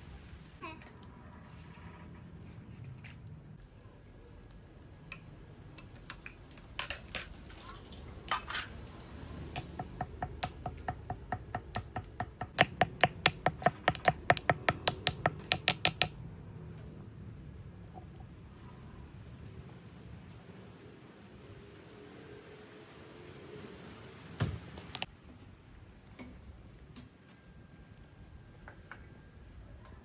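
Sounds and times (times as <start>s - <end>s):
scattered knocks: 9.5s - 16.2s
fast sharp taps: 9.6s - 16.2s.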